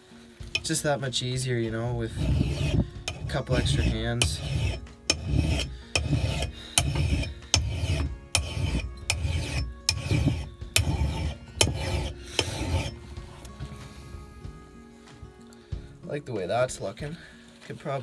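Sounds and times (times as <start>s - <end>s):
file rasping on axe: 0.5s - 0.9s, 1.7s - 13.8s.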